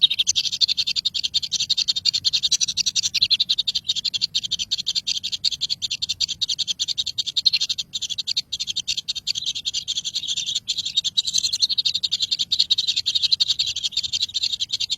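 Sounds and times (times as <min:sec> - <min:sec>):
nestling birds cheeping: 0:00.0 - 0:14.9.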